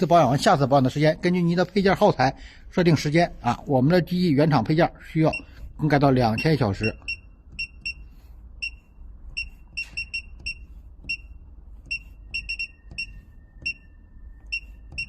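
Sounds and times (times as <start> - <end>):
low steady hum: 0.0 - 15.0
short electronic beeps: 6.3 - 15.0.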